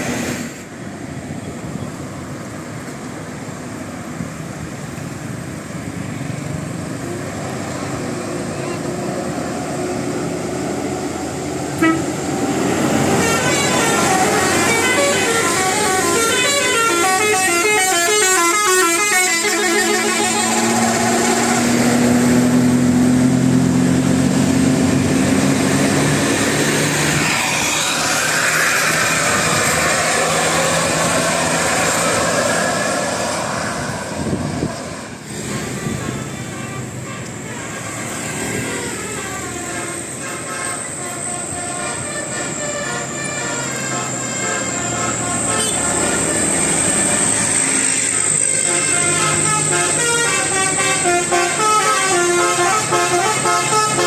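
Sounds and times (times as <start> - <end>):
bus musical horn: 11.6 - 23.4, 35.3 - 54.0.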